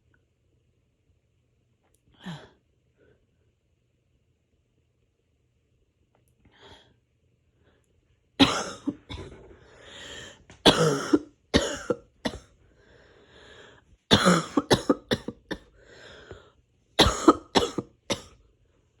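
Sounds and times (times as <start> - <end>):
person coughing: 8.4 - 9.5, 10.6 - 12.5, 14.1 - 15.7, 17.0 - 18.4
noisy breaths drawn in: 9.3 - 10.5, 12.6 - 13.9, 15.7 - 16.7.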